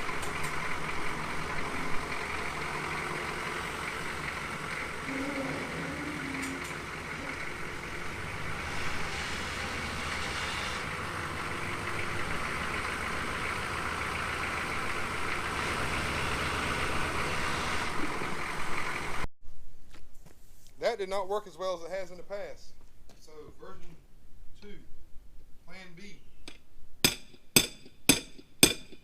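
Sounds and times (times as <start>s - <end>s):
engine running: 0.0s - 19.3s.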